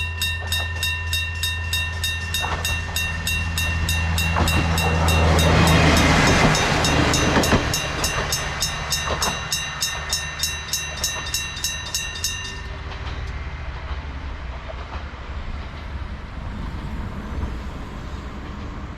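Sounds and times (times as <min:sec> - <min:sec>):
railway crossing bell ringing: 0:00.0 - 0:13.6
diesel railcar passing: 0:00.0 - 0:18.9.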